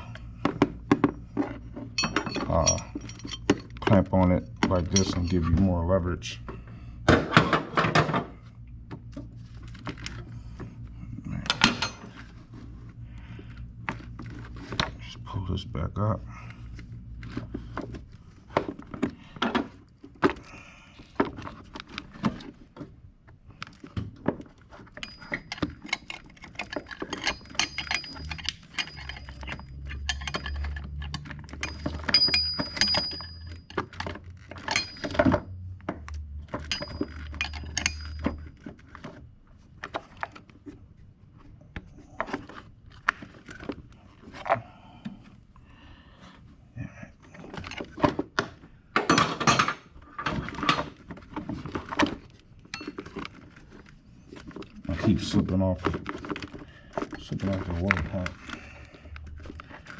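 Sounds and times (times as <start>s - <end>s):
metallic clinks of tools: 2.0s - 4.0s, 25.0s - 33.8s, 34.5s - 35.4s, 36.6s - 38.5s, 52.7s - 53.0s.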